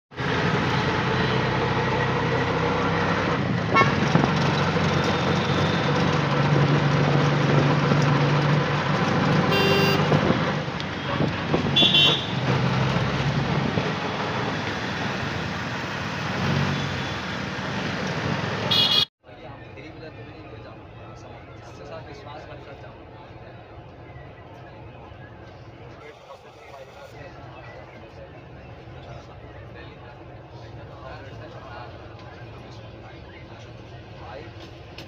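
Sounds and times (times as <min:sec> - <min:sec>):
vehicle running: 0:00.1 - 0:19.1
short horn toots: 0:09.5 - 0:10.2, 0:11.8 - 0:12.4, 0:18.7 - 0:19.1.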